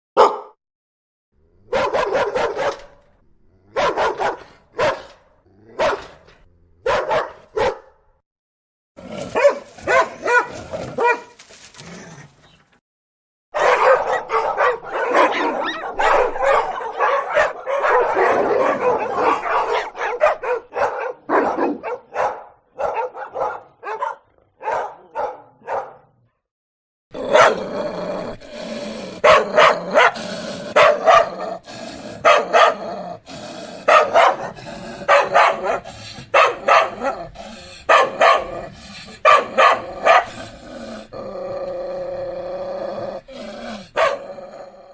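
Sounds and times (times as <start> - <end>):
dog barking: 0.2 - 0.6, 1.6 - 3.0, 3.7 - 6.2, 6.8 - 8.1, 9.3 - 11.4, 13.5 - 26.2, 27.2 - 27.7, 29.1 - 31.6, 32.2 - 32.9, 33.8 - 40.5, 43.9 - 44.4.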